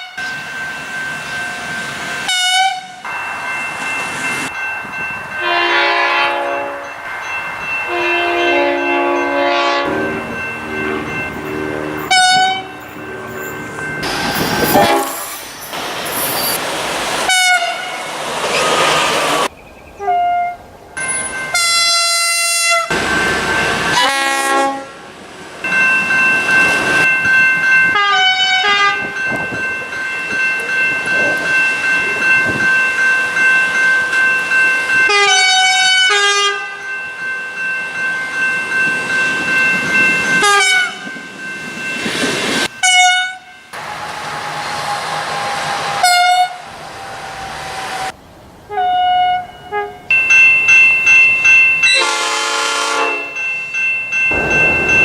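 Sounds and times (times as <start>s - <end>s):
train running noise: 0.0s - 20.0s, 20.6s - 55.0s
train horn blasts: 2.3s - 3.0s, 5.4s - 6.9s, 7.9s - 13.5s, 14.7s - 15.2s, 17.3s - 18.0s, 24.0s - 25.1s, 28.0s - 29.1s, 35.1s - 36.8s, 40.4s - 41.0s, 42.8s - 43.9s, 44.7s - 46.6s, 48.7s - 50.1s, 51.9s - 53.4s.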